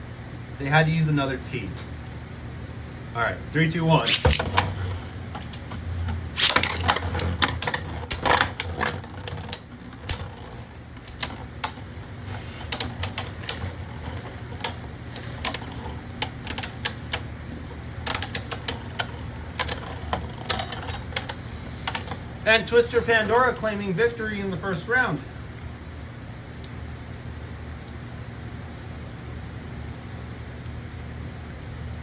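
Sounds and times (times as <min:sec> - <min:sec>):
spinning tops whirring: 0:03.5 - 0:25.5
tops clattering and colliding: 0:04.0 - 0:23.9.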